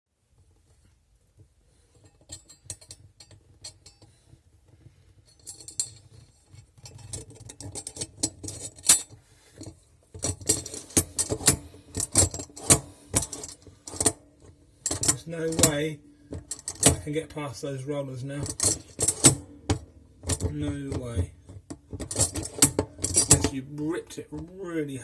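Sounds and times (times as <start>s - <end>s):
dishwasher rack rattling and clanking: 18.4s - 20.5s, 22.0s - 23.5s.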